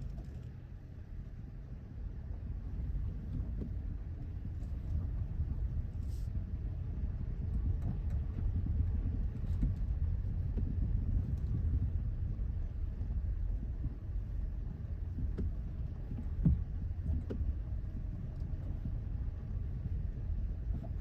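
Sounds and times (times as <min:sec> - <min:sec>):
tyres rumbling on rough road: 0:00.0 - 0:21.0.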